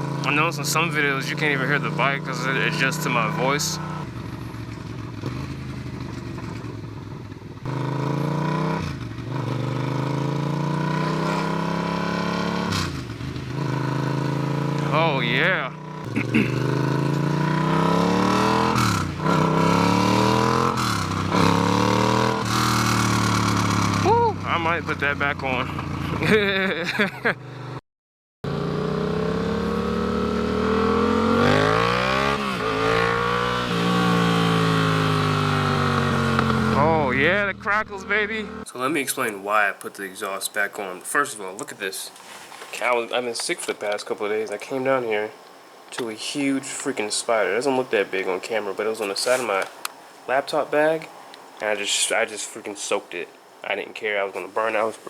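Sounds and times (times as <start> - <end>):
loud motorcycle engine revving: 0.0 - 26.4, 28.4 - 38.7.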